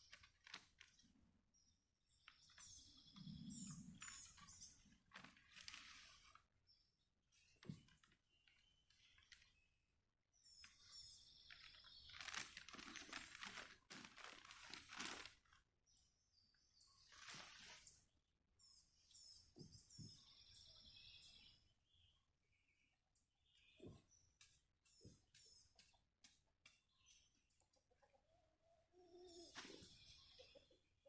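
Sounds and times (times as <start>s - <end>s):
faint bird song chirps: 0.0s - 31.0s
rustling and crunching: 4.0s - 6.4s, 11.5s - 15.6s.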